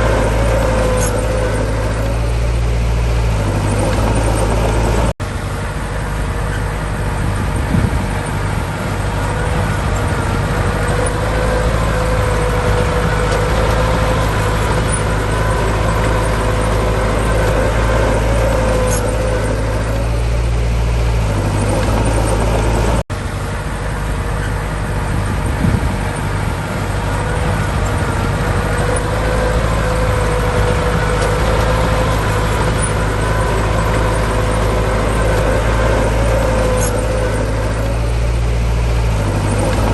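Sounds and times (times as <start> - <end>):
heavy diesel machinery rumbling: 0.0 - 39.9.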